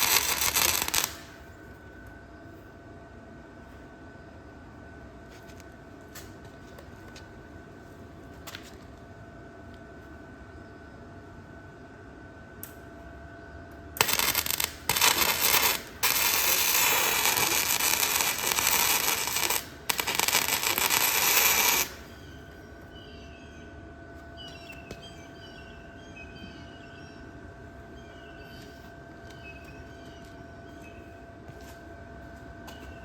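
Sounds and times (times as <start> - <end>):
welding arc crackling and sizzling: 0.0 - 1.6, 14.0 - 22.1.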